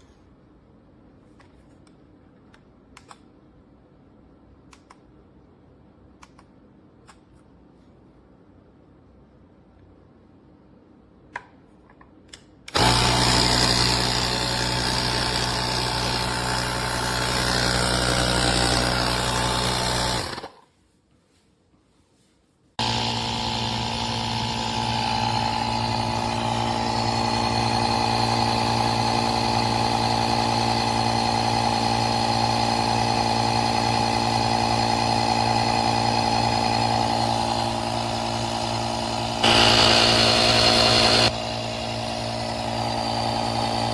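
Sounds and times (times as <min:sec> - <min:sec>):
compressor motor whining: 0:12.7 - 0:20.5, 0:22.8 - 0:43.9.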